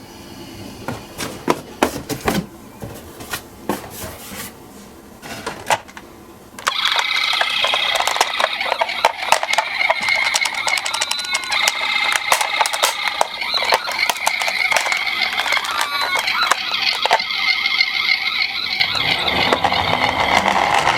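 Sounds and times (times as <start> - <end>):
high-pitched rattling: 6.6 - 20.9
toy cars clicking and knocking: 6.6 - 20.9.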